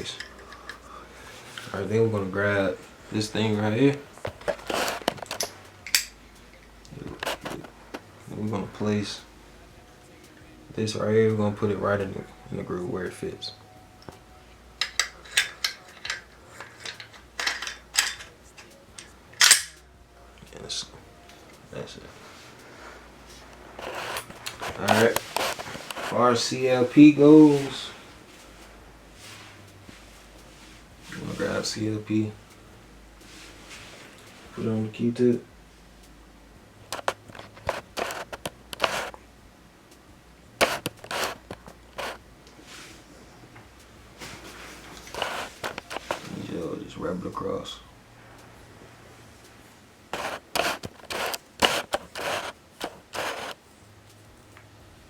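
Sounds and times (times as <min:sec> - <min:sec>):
metal rifle parts clicking: 0:00.0 - 0:00.8, 0:04.3 - 0:06.7, 0:14.8 - 0:19.8
short rustles: 0:22.1 - 0:31.9, 0:40.6 - 0:43.1, 0:44.1 - 0:46.6, 0:50.1 - 0:53.7.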